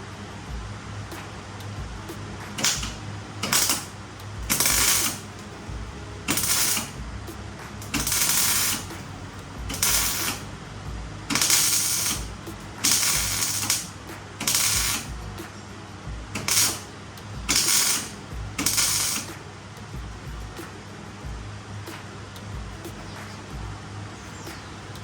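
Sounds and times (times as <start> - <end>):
steady low hum: 0.0 - 25.0
ratchet clicking: 2.6 - 5.7, 6.3 - 7.0, 7.6 - 10.6, 11.3 - 15.5, 16.4 - 20.7.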